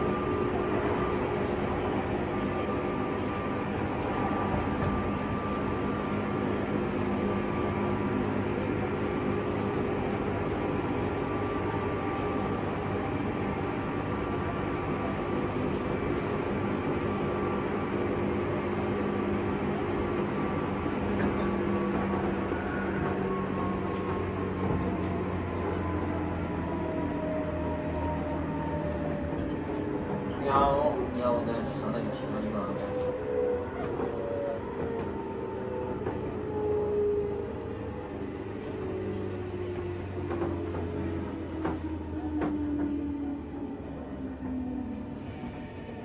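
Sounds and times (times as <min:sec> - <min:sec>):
train wheels rumbling on rail: 0:00.0 - 0:46.0.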